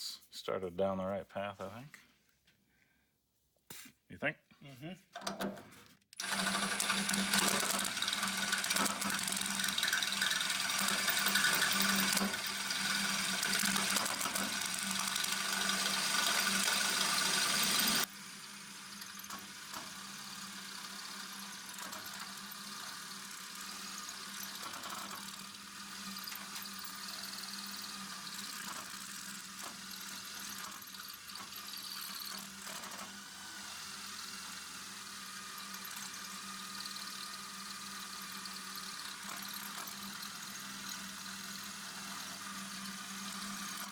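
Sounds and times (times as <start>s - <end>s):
drill bit squealing in metal: 6.2s - 18.1s
drill motor whine: 6.2s - 43.9s.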